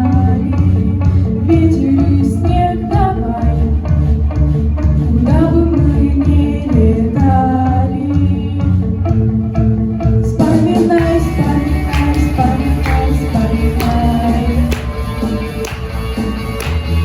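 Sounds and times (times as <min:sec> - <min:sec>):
instrumental backing track: 0:00.0 - 0:17.0
person singing: 0:10.3 - 0:15.0.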